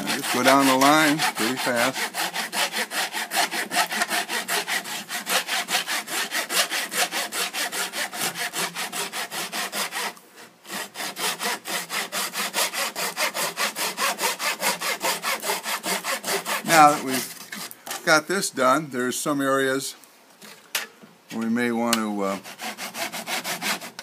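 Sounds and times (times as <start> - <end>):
hand saw cutting wood: 0.0 - 18.0, 21.9 - 24.0.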